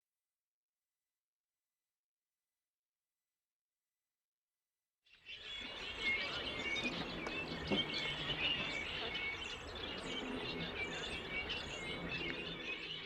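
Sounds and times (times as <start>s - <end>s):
small birds chirping: 5.1s - 13.0s
steady background noise: 5.4s - 13.0s.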